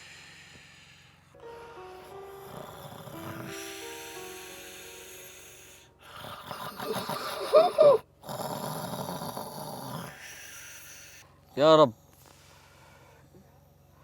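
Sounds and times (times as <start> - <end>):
man snoring: 1.8 - 11.2
snort: 2.5 - 11.3.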